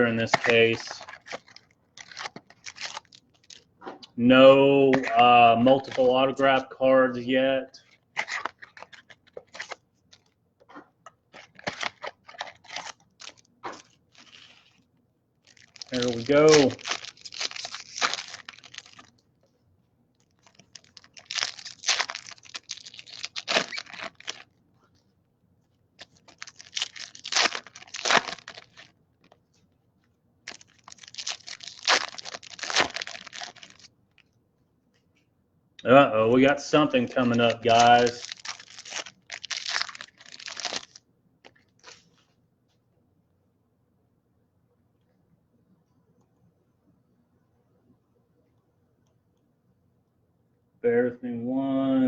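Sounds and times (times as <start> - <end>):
trading cards rustling: 0.0 - 3.7, 4.9 - 10.3, 11.3 - 14.8, 15.4 - 19.2, 20.3 - 24.5, 26.0 - 29.4, 30.5 - 33.9, 36.8 - 42.2.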